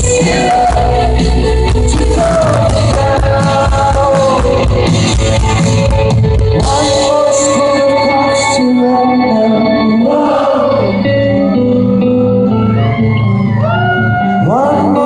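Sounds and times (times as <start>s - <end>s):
rock band playing live: 0.0s - 15.0s
singer holding long notes: 6.6s - 15.0s.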